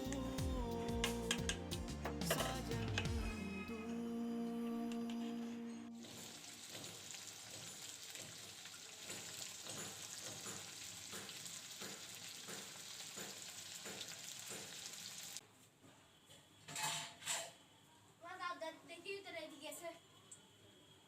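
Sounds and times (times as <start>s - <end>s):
food sizzling in oil: 6.0s - 15.4s
spatula scraping a pan: 16.7s - 17.6s.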